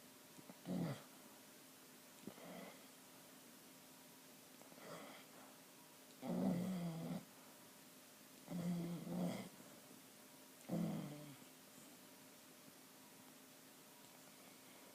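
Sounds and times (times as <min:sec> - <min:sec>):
dog snoring: 0:00.6 - 0:01.1, 0:02.3 - 0:02.9, 0:06.2 - 0:07.3, 0:08.5 - 0:09.5, 0:10.7 - 0:11.4.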